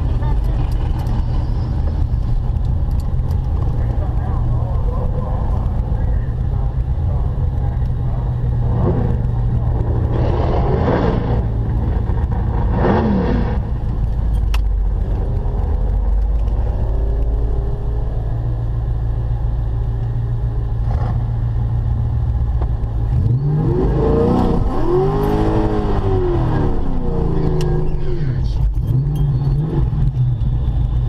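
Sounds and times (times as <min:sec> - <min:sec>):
car engine idling with deep rumble: 0:00.0 - 0:31.0
engine revving: 0:07.1 - 0:18.6, 0:20.8 - 0:21.6, 0:23.0 - 0:31.0.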